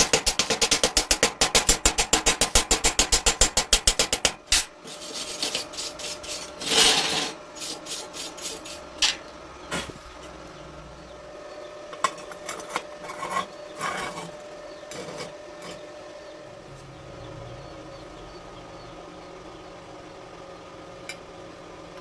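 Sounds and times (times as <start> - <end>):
fast mechanical tapping: 0.0 - 4.7
scraping and rubbing: 4.8 - 8.9, 12.3 - 15.8.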